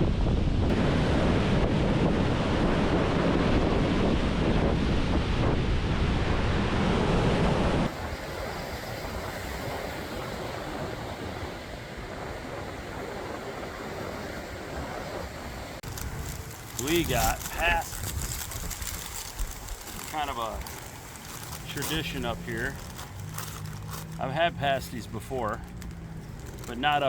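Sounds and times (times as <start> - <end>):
wind buffeting microphone: 0.0 - 27.0
waves breaking on shore: 7.8 - 27.0.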